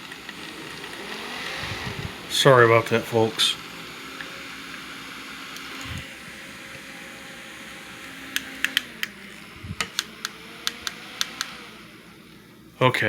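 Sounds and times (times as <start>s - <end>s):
plastic fan switch clicks: 8.3s - 9.2s, 9.8s - 11.6s.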